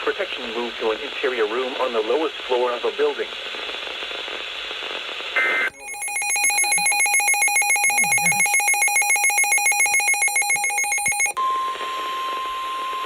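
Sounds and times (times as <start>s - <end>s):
steady warning alert tone: 5.7s - 11.3s
digital data burst: 5.7s - 11.4s
rapidly pulsing alarm beep: 5.7s - 11.4s.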